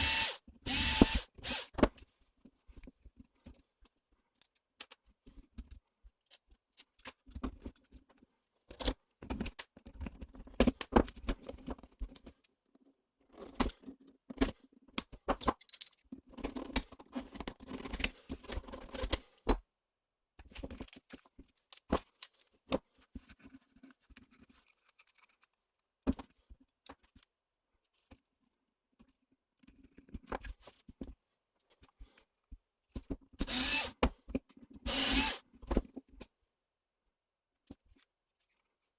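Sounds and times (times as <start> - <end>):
small parts clicking and rattling: 4.3 - 19.6, 20.4 - 25.6.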